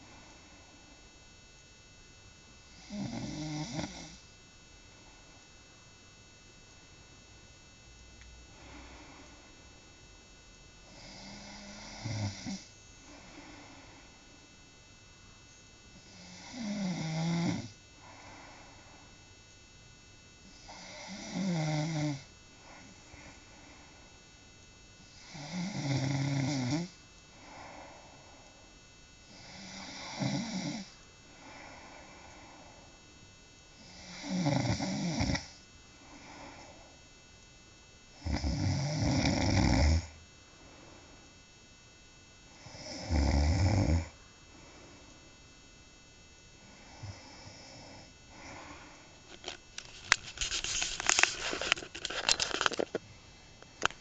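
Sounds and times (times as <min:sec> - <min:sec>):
quiet breathing: 0:00.0 - 0:01.0, 0:08.4 - 0:09.7, 0:10.8 - 0:14.6, 0:17.7 - 0:19.3, 0:22.3 - 0:24.4, 0:26.8 - 0:30.2, 0:30.8 - 0:34.0, 0:35.4 - 0:37.2, 0:40.4 - 0:41.5, 0:44.1 - 0:45.5, 0:46.5 - 0:54.0
woman snoring: 0:02.7 - 0:04.2, 0:10.8 - 0:14.2, 0:16.0 - 0:18.8, 0:20.4 - 0:23.4, 0:25.0 - 0:28.2, 0:29.3 - 0:32.8, 0:33.8 - 0:37.0, 0:38.2 - 0:40.2, 0:42.6 - 0:44.2, 0:46.6 - 0:49.6
rustling and crinkling: 0:49.3 - 0:53.0.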